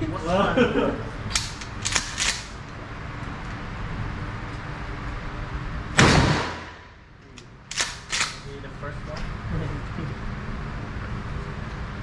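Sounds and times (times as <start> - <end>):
shotgun shot: 6.0 - 6.9.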